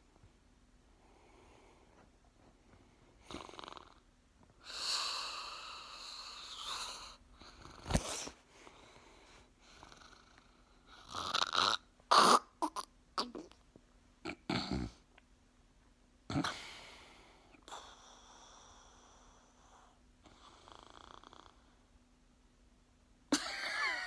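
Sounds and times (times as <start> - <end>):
loud snoring: 11.0 - 11.8.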